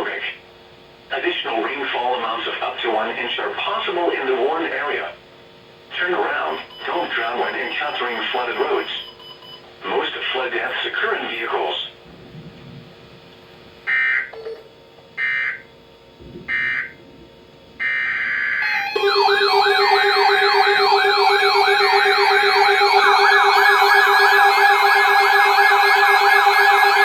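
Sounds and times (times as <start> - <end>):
wailing siren-like attention tone: 17.8 - 27.0
harsh digital data bursts: 18.6 - 27.0
steady low tone: 18.6 - 27.0.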